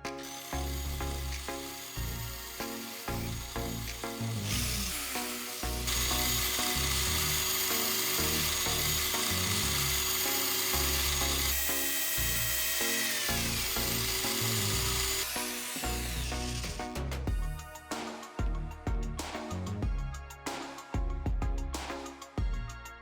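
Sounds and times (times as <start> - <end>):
small power tool whining: 0.0 - 17.2
background music: 0.0 - 23.0.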